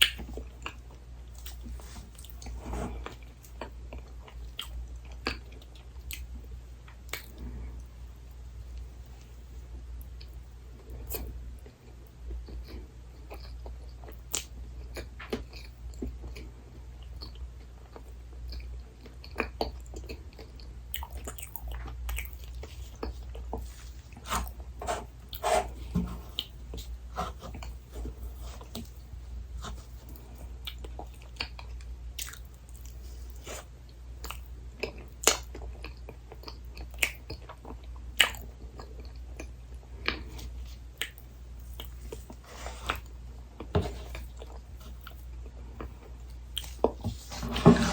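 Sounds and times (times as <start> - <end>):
steady low hum: 0.0 - 47.9
chewing with wet mouth clicks: 10.1 - 23.6, 30.6 - 33.0, 34.2 - 40.4, 41.0 - 42.3, 44.1 - 46.8.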